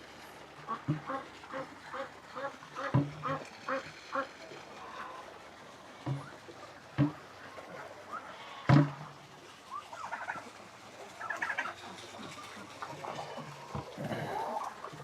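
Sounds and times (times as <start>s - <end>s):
chickens clucking: 0.4s - 15.0s
turkey calling: 9.6s - 14.9s.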